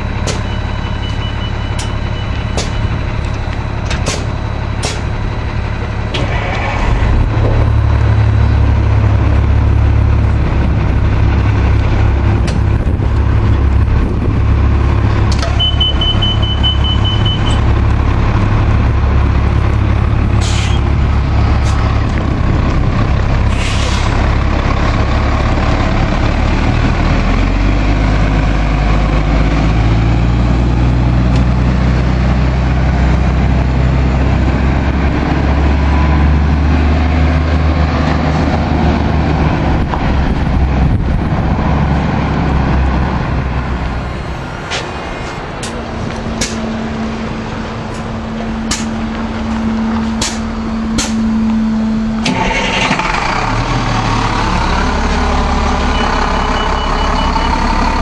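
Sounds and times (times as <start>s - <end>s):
high beeping: 0.0s - 6.1s, 15.4s - 17.7s, 55.7s - 58.0s
buses idling: 0.0s - 58.0s.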